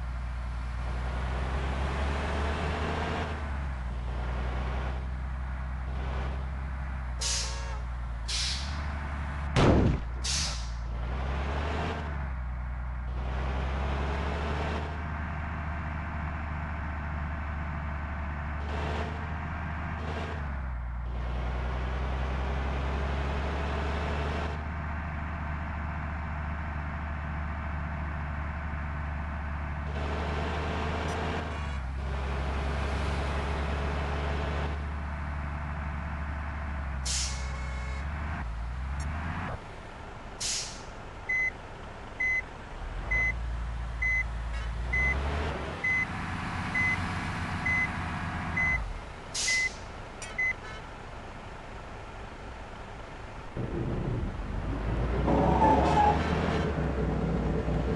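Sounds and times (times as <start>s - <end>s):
diesel bus engines rumbling: 0.0s - 57.9s
air brake hisses: 7.2s - 7.7s, 8.3s - 8.8s, 10.2s - 10.8s, 37.1s - 37.6s, 40.4s - 40.9s, 49.4s - 49.8s.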